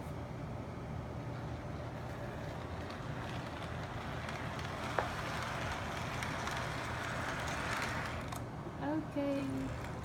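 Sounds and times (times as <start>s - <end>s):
model train rumbling on track: 1.4s - 8.4s.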